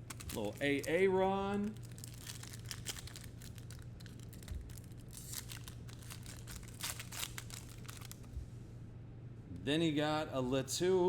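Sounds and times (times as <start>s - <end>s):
wrappers crinkling and tearing: 0.0s - 8.3s
low steady hum: 0.0s - 11.0s.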